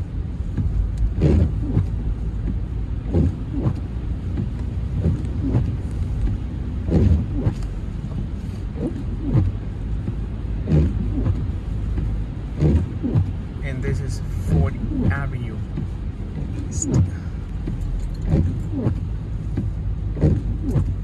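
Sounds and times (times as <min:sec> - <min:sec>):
engine and tyres rumbling: 0:00.0 - 0:21.0.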